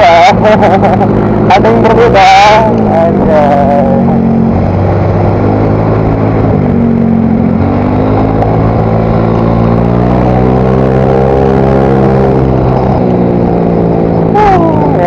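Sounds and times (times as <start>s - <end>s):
scooter engine running: 11.3s - 15.0s.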